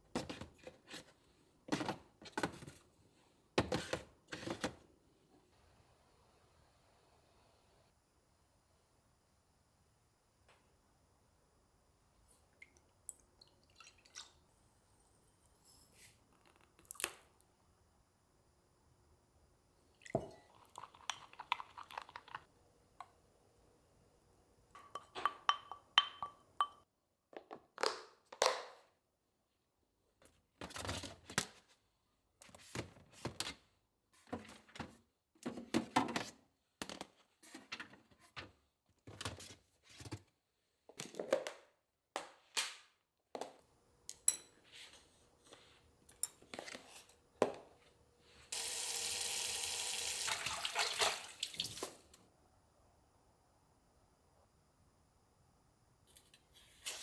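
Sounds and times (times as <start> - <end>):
dishes and containers clinking: 24.8 - 26.8.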